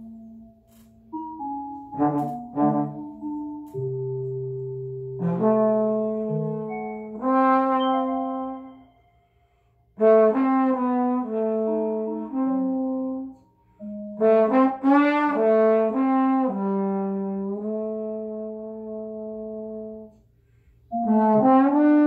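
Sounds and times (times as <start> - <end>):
trombone improvising: 0.0 - 20.3, 20.9 - 22.0.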